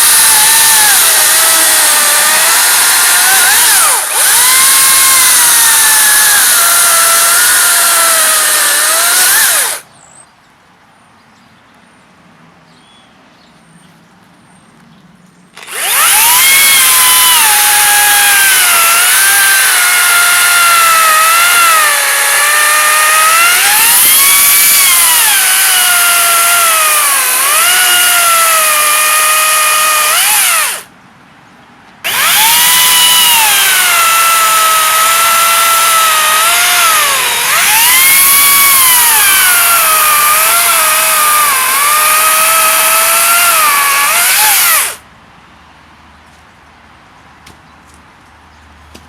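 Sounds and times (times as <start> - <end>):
battery chainsaw cutting wood: 0.0 - 9.9, 15.6 - 30.9, 32.0 - 45.0.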